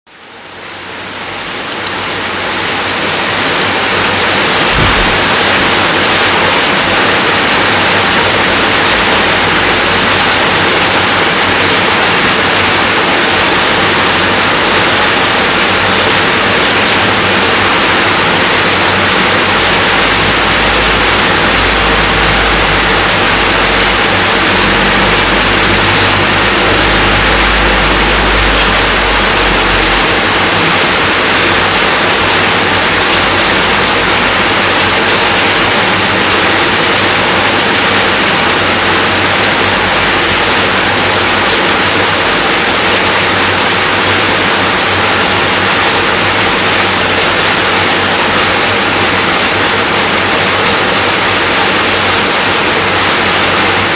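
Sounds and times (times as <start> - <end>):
heavy rainfall hiss: 0.1 - 53.9
low rumble: 19.6 - 32.4.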